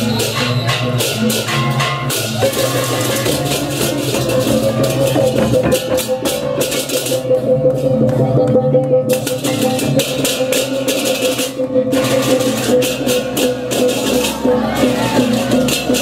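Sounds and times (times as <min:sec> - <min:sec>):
small clashing cymbals: 0:00.0 - 0:07.2
drums: 0:00.0 - 0:16.0
metallic pitched instruments: 0:00.0 - 0:16.0.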